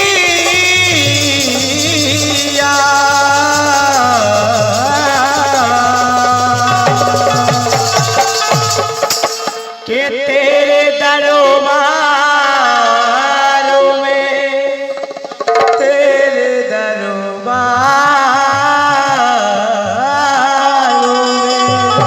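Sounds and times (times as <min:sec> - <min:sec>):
hand drum strokes: 0:00.0 - 0:09.8, 0:14.9 - 0:16.1.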